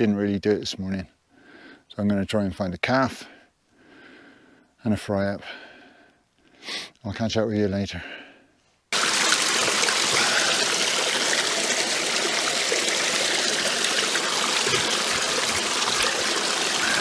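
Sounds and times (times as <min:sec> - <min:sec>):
stream running over rocks: 0:08.9 - 0:17.0.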